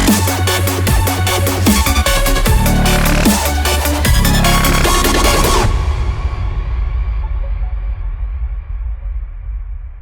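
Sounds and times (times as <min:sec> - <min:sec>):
electronic music with deep bass: 0:00.0 - 0:09.4.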